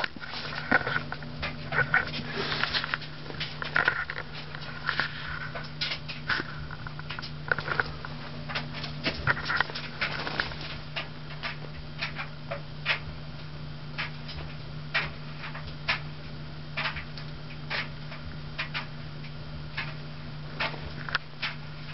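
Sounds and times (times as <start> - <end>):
ceiling fan motor hum: 0.0 - 21.9
sharp ticks of ceiling fan: 5.5 - 21.9.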